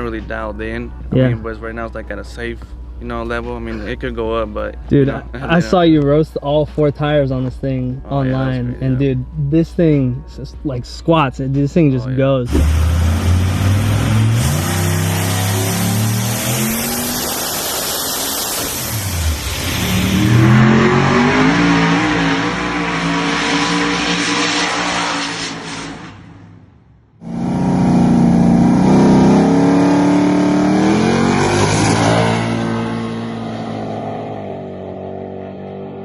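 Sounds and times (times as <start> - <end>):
truck engine accelerating hard: 12.5 - 36.0.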